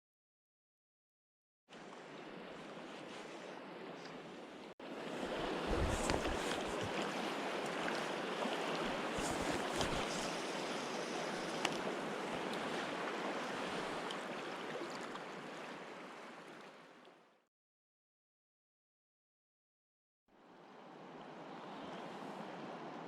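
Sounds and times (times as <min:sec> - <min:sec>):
river water rushing: 0:04.8 - 0:16.9.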